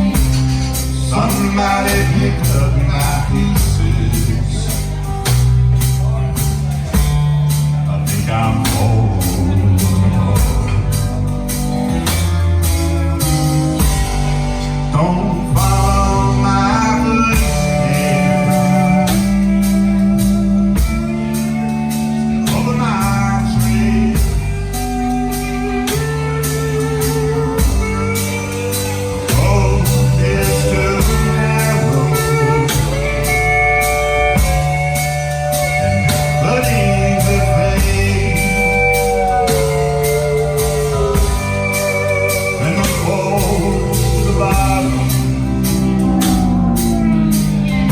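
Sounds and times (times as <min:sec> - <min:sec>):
blues-rock song with guitar and singing: 0:00.0 - 0:47.9.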